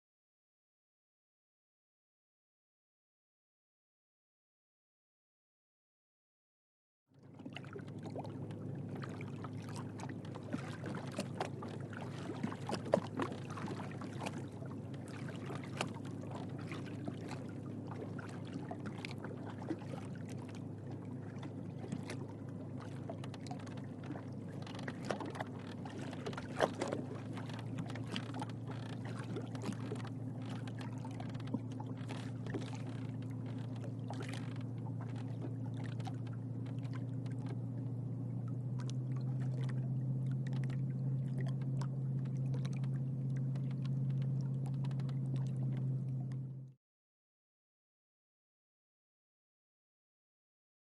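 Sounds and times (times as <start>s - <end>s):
distant boat motors humming: 7.2s - 46.7s
water slapping against boat hull: 7.3s - 46.7s.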